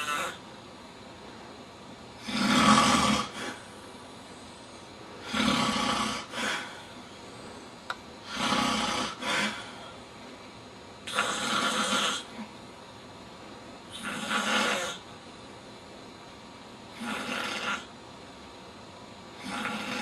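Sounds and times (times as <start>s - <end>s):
man snoring loudly: 0.0s - 0.4s, 2.2s - 3.6s, 5.2s - 6.7s, 8.3s - 9.8s, 11.1s - 12.3s, 14.0s - 15.0s, 17.0s - 17.9s, 19.4s - 20.0s.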